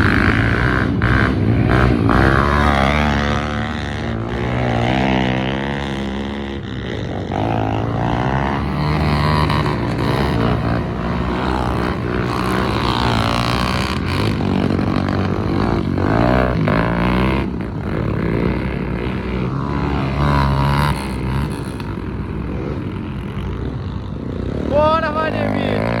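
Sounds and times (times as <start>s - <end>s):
motorcycle engine revving: 0.0s - 26.0s.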